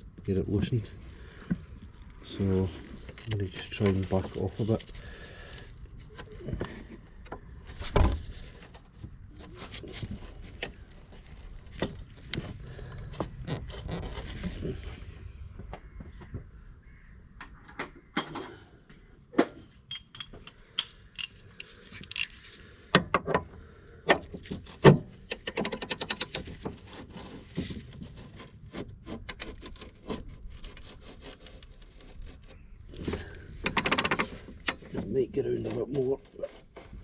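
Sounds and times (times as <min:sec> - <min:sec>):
metal clicks and scrapes: 0:19.9 - 0:22.6, 0:24.4 - 0:37.0.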